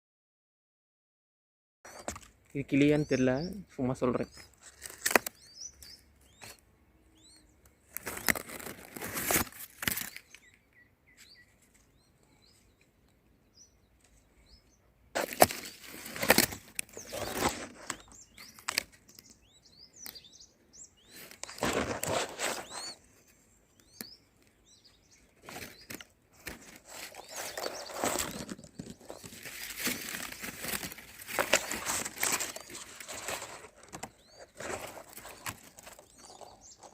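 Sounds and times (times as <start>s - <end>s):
birds chirping: 1.8s - 36.9s
loud scratchy rustling: 7.9s - 10.3s, 15.2s - 19.0s, 21.1s - 23.0s, 25.4s - 36.9s.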